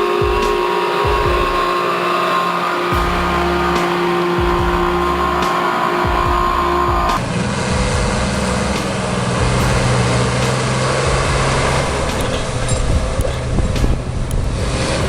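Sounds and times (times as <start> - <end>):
heavy mechanical noise: 0.0 - 15.0
vehicle engine running: 0.0 - 15.0.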